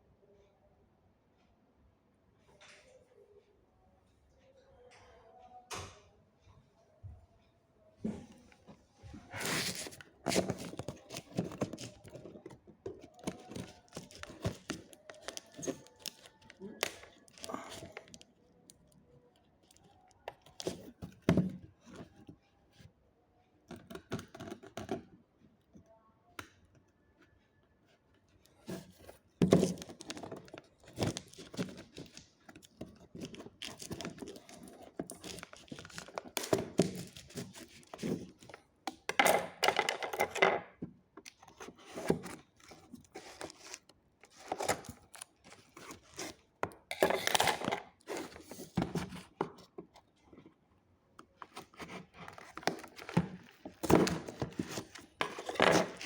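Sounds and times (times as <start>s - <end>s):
cardboard and plastic tearing: 9.4s - 18.2s, 28.7s - 38.5s, 41.4s - 49.6s, 51.5s - 56.0s.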